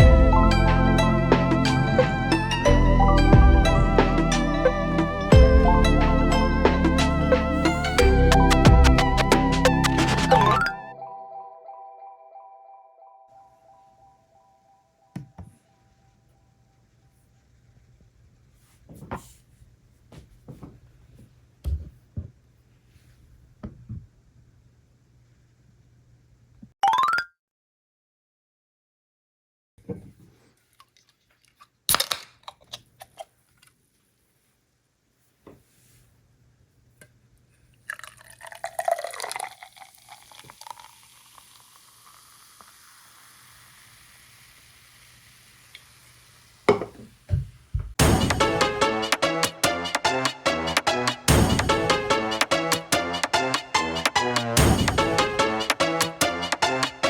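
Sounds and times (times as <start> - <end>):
beer gurgling into glass: 37.9 - 44.0
foam fizzing: 39.1 - 46.7
tableware knocking on a table: 46.7 - 47.0.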